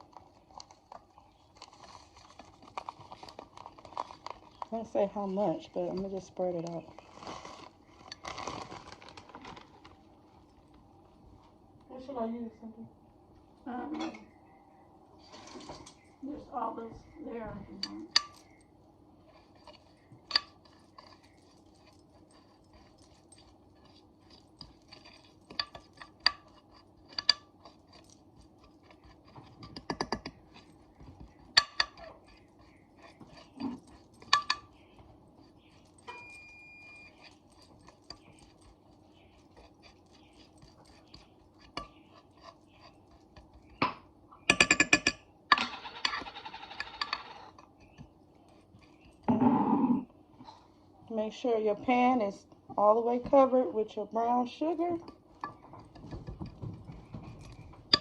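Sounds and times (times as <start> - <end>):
scraping rustling noise: 0.0 - 10.7, 15.2 - 16.9.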